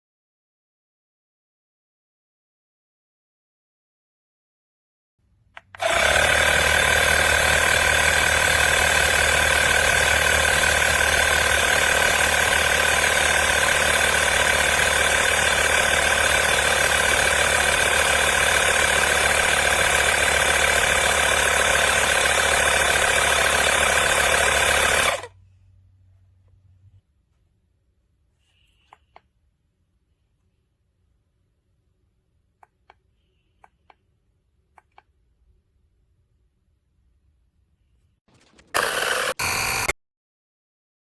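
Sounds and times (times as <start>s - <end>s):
tire inflator compressor buzzing: 5.6s - 25.4s, 38.4s - 40.0s.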